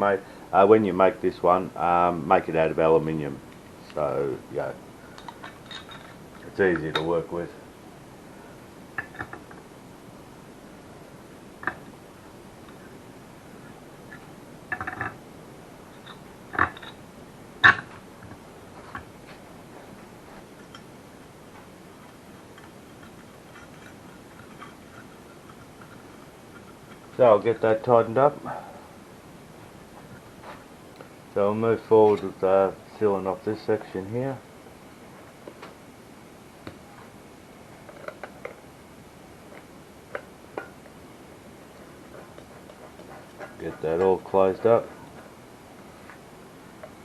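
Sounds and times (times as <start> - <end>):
metal parts clicking and clinking: 5.2 - 7.0.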